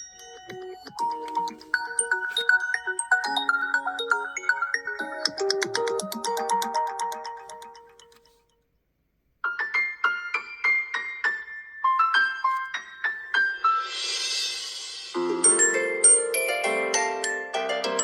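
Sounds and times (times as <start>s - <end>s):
phone ringtone: 0.0s - 8.3s
electric piano melody: 0.0s - 8.4s, 9.4s - 13.9s.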